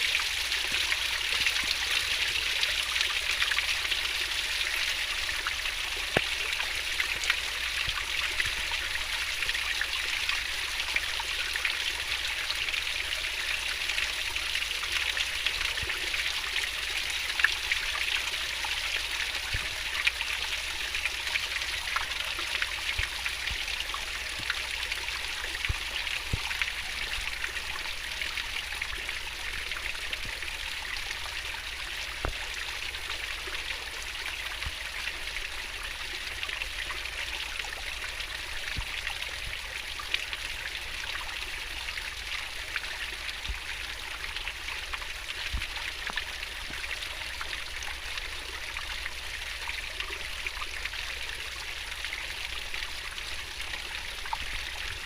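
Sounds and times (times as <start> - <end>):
stream splashing over rocks: 0.0 - 55.0.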